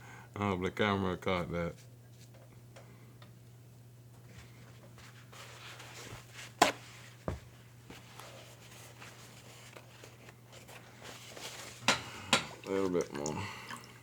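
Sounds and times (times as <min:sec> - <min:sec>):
paper towel wiping a shell: 0:07.9 - 0:11.8.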